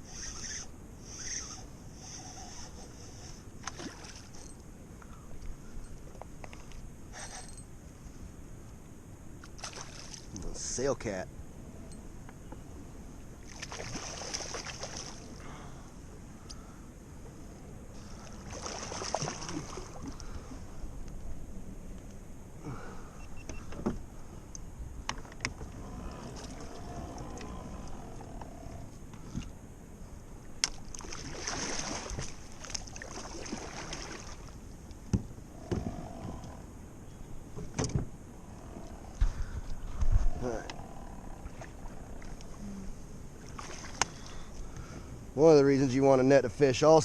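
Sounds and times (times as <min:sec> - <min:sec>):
water splashing at a kayak: 0:03.6 - 0:04.4, 0:09.4 - 0:10.5, 0:13.4 - 0:15.5, 0:18.0 - 0:20.6, 0:30.4 - 0:34.9, 0:43.4 - 0:44.8.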